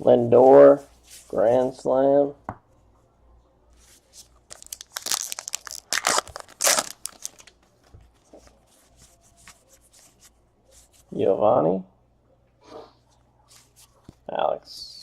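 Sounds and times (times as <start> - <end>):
wrapper tearing and crinkling: 4.5 - 7.6.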